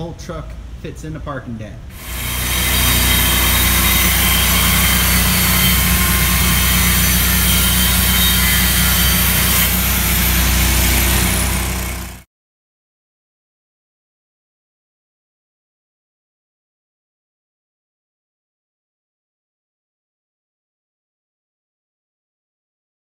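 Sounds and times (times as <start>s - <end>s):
engine running loudly: 2.0s - 12.2s.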